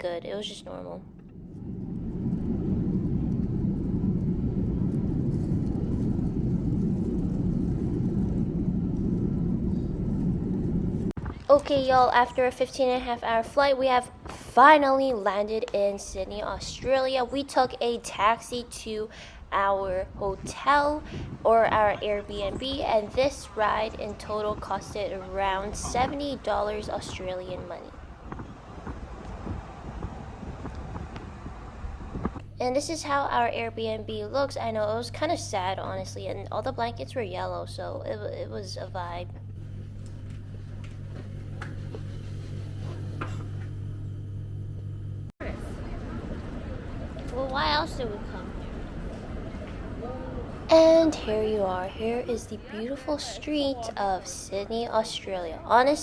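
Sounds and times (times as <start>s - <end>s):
jet engines and airflow rumble: 0.0s - 56.0s
car road rumble and wind: 1.1s - 11.3s, 27.5s - 32.6s.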